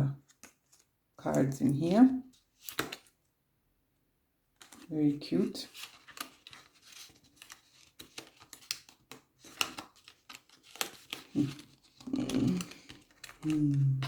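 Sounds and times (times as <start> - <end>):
paper rustling: 1.8 - 3.2, 4.6 - 4.9, 5.5 - 14.0
cards tapping and clicking: 2.6 - 3.1, 5.8 - 14.0.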